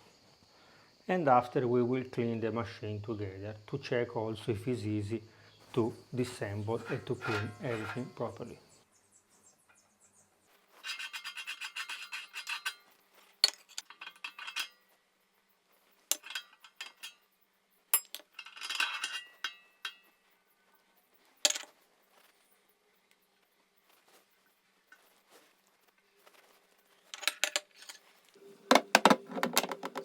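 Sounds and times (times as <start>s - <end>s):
metal utensils clinking on dishes: 5.8s - 8.4s, 10.8s - 12.8s, 13.4s - 14.9s, 16.1s - 17.2s, 18.0s - 20.1s.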